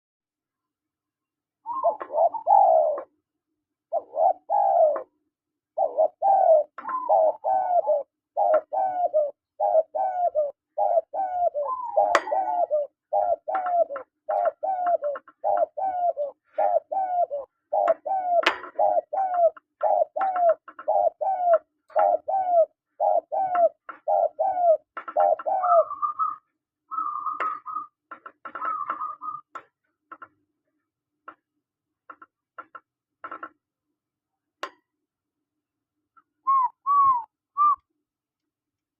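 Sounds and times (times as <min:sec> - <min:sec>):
doves cooing: 0:01.6 - 0:03.2, 0:03.9 - 0:29.5, 0:36.5 - 0:37.8.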